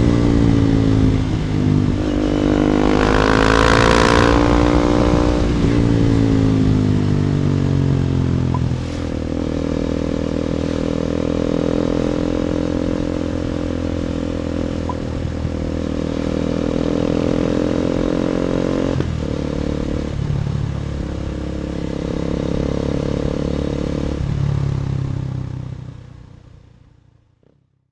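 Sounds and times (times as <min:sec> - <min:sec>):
wind noise on microphone: 0:00.0 - 0:07.4
motorcycle engine running: 0:00.0 - 0:26.9.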